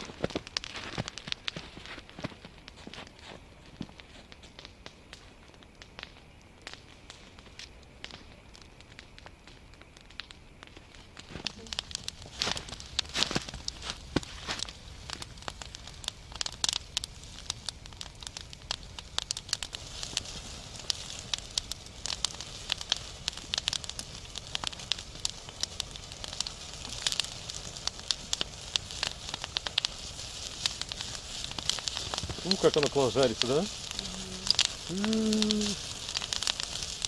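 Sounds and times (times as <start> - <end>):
fat popping and crackling: 0.0 - 37.0
fat sizzling in a pan: 11.2 - 37.0.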